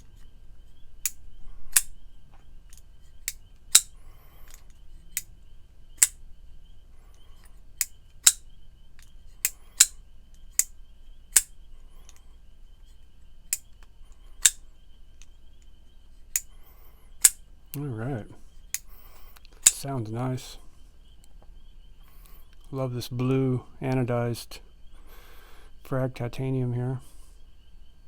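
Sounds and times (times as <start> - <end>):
pocket knife blade clicking: 1.0 - 1.9, 2.7 - 3.9, 9.0 - 10.7, 11.3 - 11.5, 14.4 - 14.6, 17.2 - 17.4.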